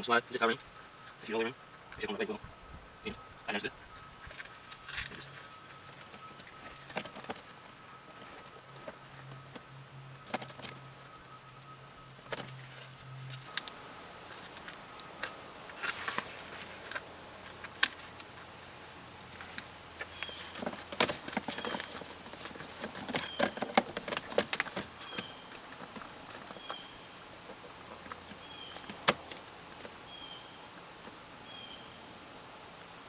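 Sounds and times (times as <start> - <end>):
faint steady hum: 0.0 - 33.0
small clicks and rustles: 3.9 - 11.6, 19.2 - 30.0.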